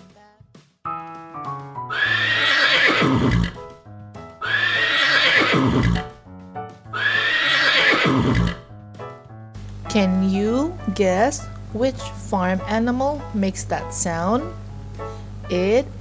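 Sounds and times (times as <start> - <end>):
light background music: 0.0 - 16.0
piano-like notes: 0.9 - 2.4, 8.6 - 16.0
horse neighing: 1.9 - 3.6, 4.4 - 6.2, 7.0 - 8.7.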